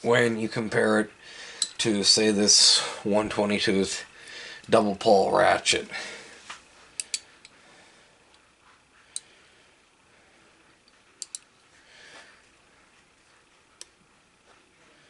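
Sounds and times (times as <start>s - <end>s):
metallic ratchet clicks: 7.0s - 7.2s, 11.2s - 11.4s.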